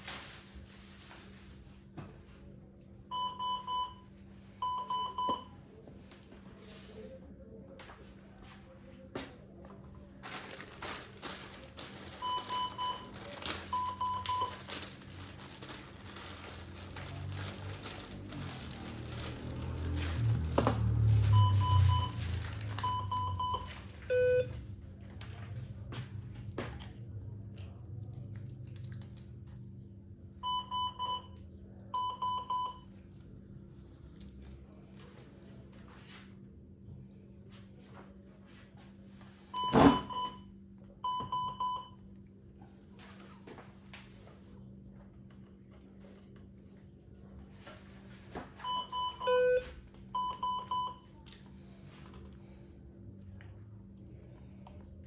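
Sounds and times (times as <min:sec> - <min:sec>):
crinkling and rustling handling: 0:00.0 - 0:02.6, 0:04.2 - 0:29.9, 0:41.4 - 0:55.0
medical monitor beeping: 0:03.1 - 0:05.6, 0:12.2 - 0:14.8, 0:21.1 - 0:24.6, 0:30.4 - 0:32.9, 0:39.5 - 0:42.0, 0:48.6 - 0:51.0.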